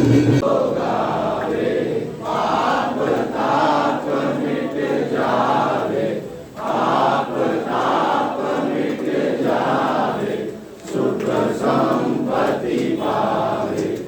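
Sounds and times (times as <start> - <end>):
crowd singing devotional song: 0.0 - 14.0.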